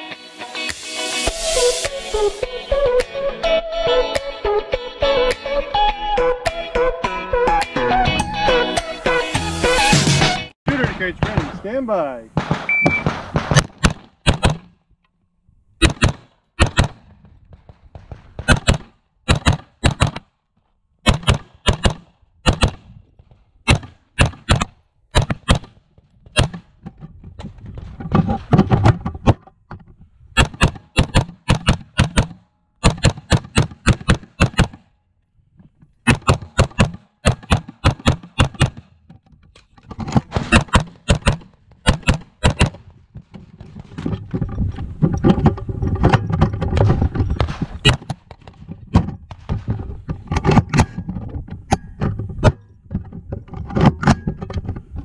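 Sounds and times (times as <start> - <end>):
rifle firing shots: 12.3 - 14.7.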